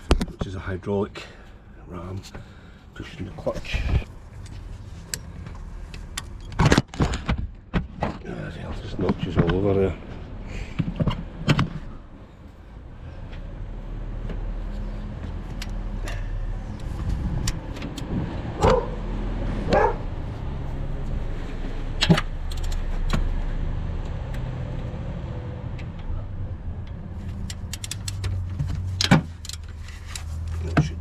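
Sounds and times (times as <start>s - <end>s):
steady low hum: 0.0s - 24.1s.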